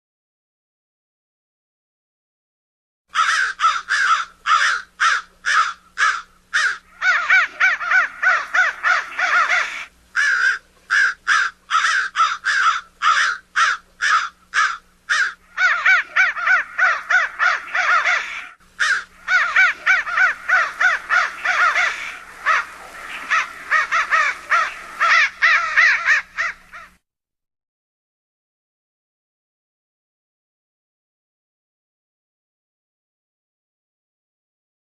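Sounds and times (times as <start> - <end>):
crows cawing: 3.1 - 27.0
faint steady hum: 3.1 - 27.0.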